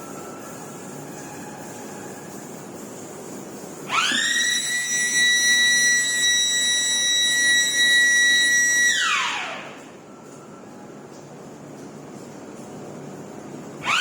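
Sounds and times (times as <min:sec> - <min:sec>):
low machine hum: 0:00.0 - 0:14.0
electric alarm siren wailing: 0:03.9 - 0:10.4.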